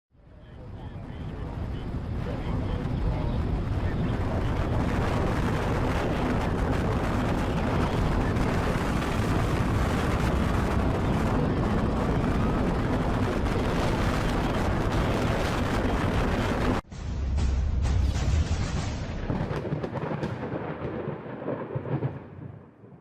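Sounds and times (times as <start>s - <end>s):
strong wind on microphone: 1.0s - 16.9s.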